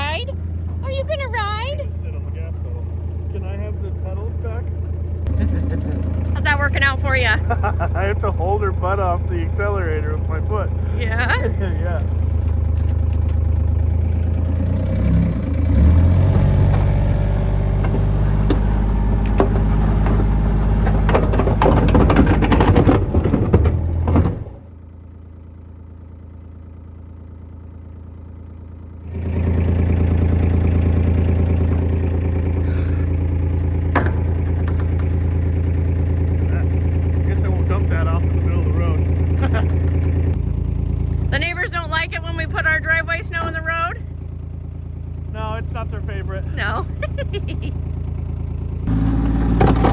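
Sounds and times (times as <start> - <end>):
vehicle engine running: 0.0 - 49.9
clattering and rattling: 11.2 - 14.8, 15.6 - 24.7, 29.2 - 37.2.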